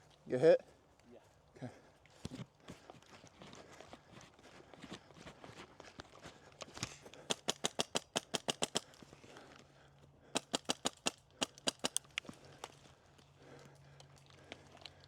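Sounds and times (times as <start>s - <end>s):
airsoft rifle shots: 7.3s - 8.9s, 10.4s - 12.1s.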